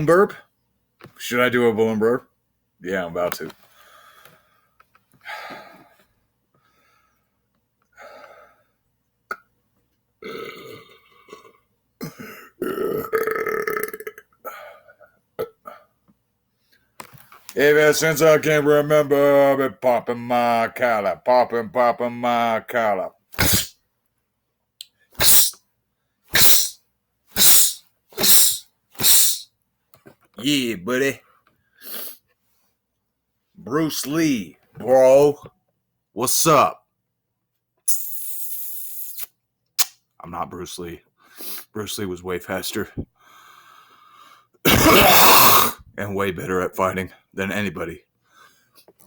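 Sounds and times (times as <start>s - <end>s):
man belching: 10.2s - 14.4s, 15.4s - 15.8s, 44.7s - 45.8s
man's sharp hissing exhalations: 23.4s - 23.7s, 25.2s - 25.6s, 26.4s - 26.8s, 27.4s - 29.5s, 31.8s - 32.2s, 41.3s - 41.7s, 43.3s - 45.8s.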